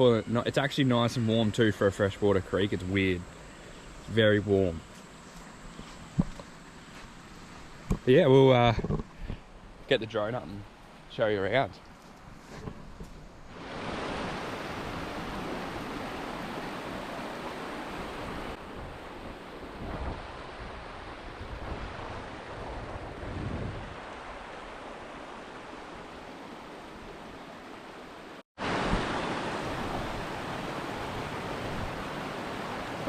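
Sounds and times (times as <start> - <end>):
creek flowing over rocks: 23.9 - 33.0.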